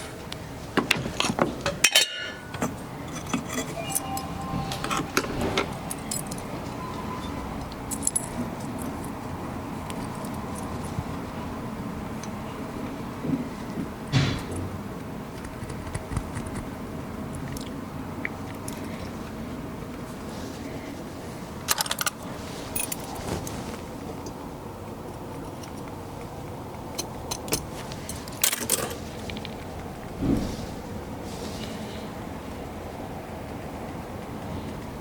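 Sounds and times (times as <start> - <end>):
steady background hum: 0.0 - 35.0
metal tools clinking: 1.9 - 6.5, 28.2 - 29.0.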